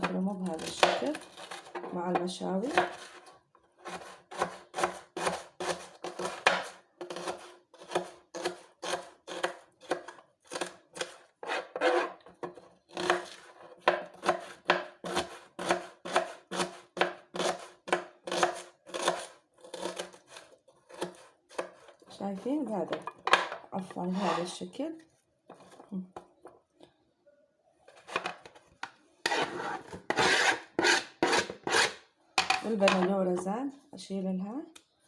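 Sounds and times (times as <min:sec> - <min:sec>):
knife chopping onion: 0:00.0 - 0:22.1, 0:29.2 - 0:32.0.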